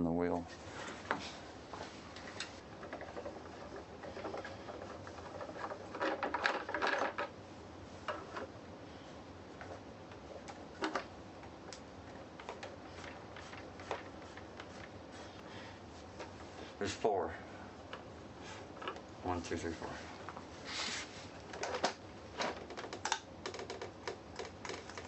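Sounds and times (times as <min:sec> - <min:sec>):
plastic parts clicking and scraping: 0:02.2 - 0:07.3, 0:21.5 - 0:25.0.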